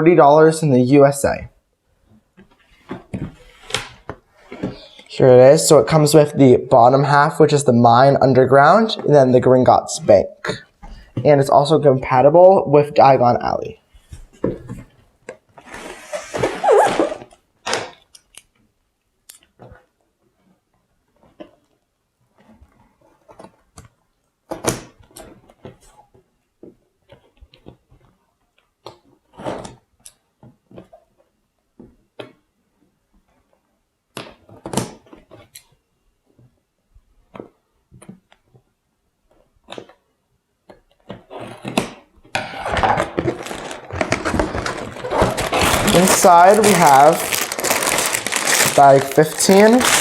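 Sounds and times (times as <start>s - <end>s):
plastic bags crinkling: 15.6s - 17.4s, 42.8s - 50.0s.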